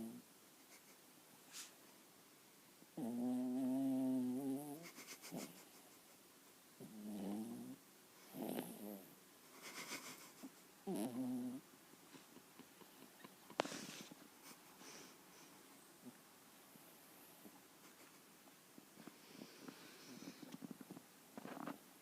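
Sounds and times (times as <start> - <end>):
puppy snoring: 0.0 - 0.2, 3.0 - 5.6, 6.8 - 10.1, 10.8 - 11.6.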